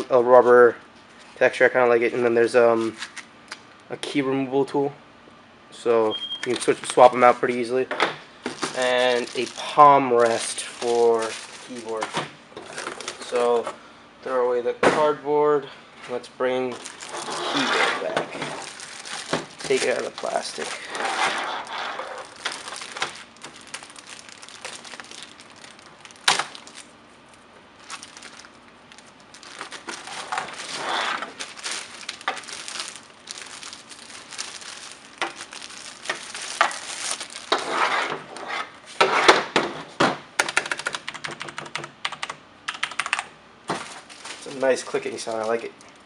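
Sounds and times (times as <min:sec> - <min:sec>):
plastic wrap crinkling: 0:08.4 - 0:13.6, 0:16.7 - 0:37.9, 0:43.7 - 0:46.0
mechanical keyboard typing: 0:40.4 - 0:43.3.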